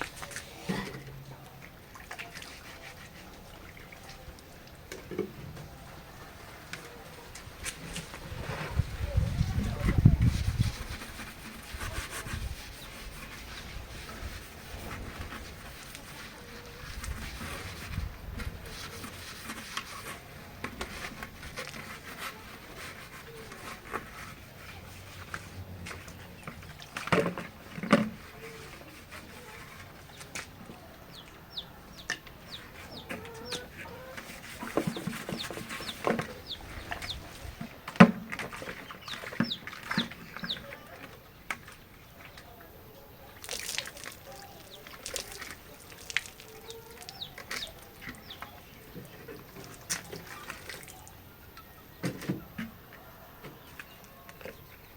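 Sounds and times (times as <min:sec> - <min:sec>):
hens clucking: 0:28.2 - 0:37.8, 0:43.9 - 0:54.8.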